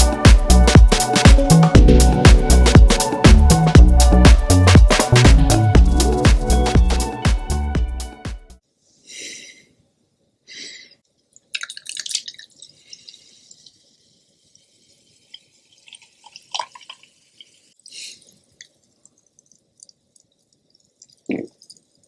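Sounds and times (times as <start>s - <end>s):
wet chewing and smacking: 18.6s - 22.0s.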